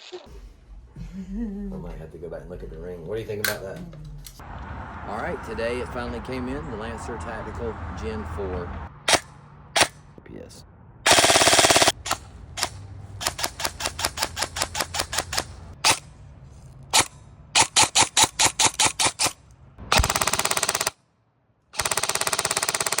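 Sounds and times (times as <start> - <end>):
airsoft gun firing: 11.1 - 16.0, 16.9 - 21.0, 21.8 - 23.0.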